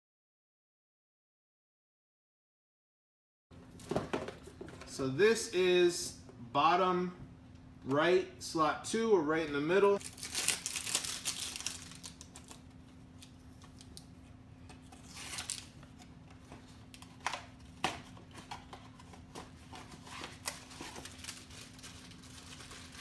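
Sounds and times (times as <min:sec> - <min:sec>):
packaging rustle: 0:10.0 - 0:14.1, 0:14.8 - 0:15.8, 0:16.8 - 0:23.0.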